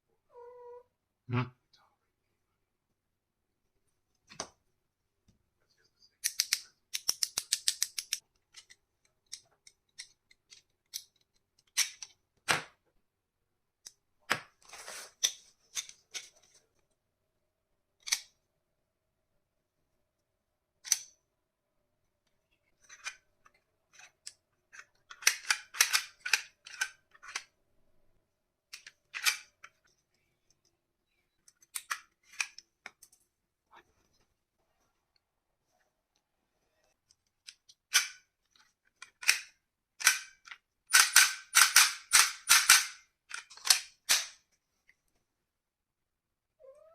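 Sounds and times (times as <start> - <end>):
toy pistol plastic clicks: 6.2 - 12.1, 25.1 - 27.5, 39.0 - 44.4.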